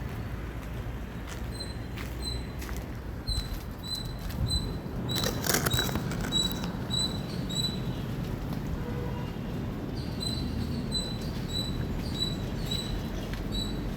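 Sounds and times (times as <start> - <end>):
rustling crackle: 5.1 - 6.8.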